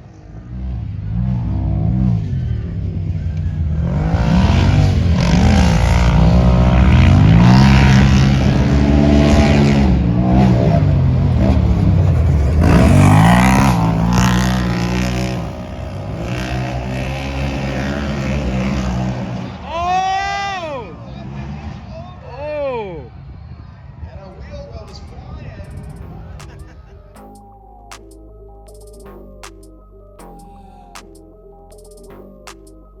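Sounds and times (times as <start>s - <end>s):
utility vehicle engine revving: 0.0s - 19.8s.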